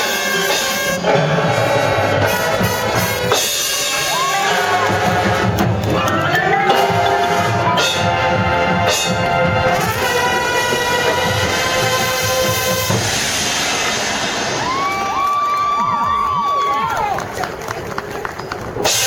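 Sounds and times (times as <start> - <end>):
marching band playing: 0.0 - 19.0.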